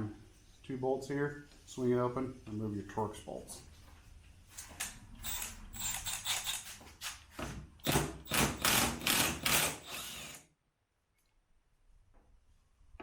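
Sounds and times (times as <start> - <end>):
ratchet wrench clicking: 5.2 - 6.7.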